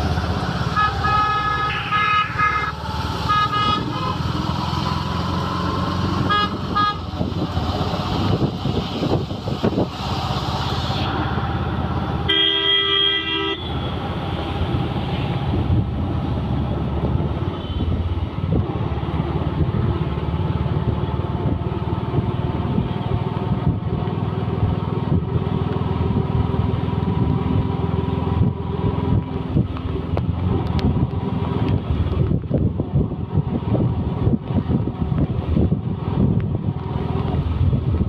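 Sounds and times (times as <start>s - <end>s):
road traffic engines: 0.0s - 38.0s
vehicle horn: 0.7s - 4.3s, 6.1s - 7.1s, 12.2s - 14.0s.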